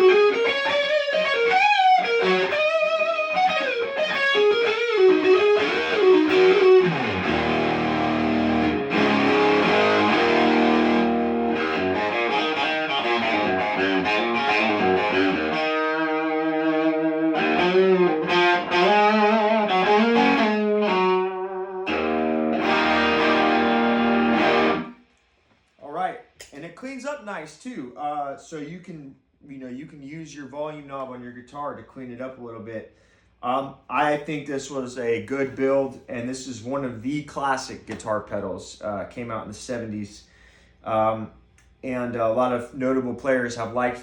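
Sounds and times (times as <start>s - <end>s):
distorted electric guitar: 0.0s - 25.0s.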